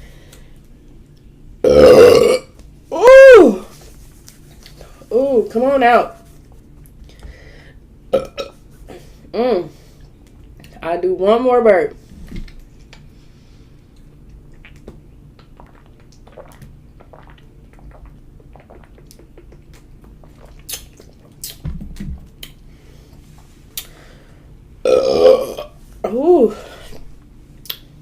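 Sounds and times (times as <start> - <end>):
person burping: 1.6 - 2.5, 8.1 - 8.6, 24.8 - 26.2
mouth noises and clicks: 13.9 - 22.6, 27.6 - 27.9.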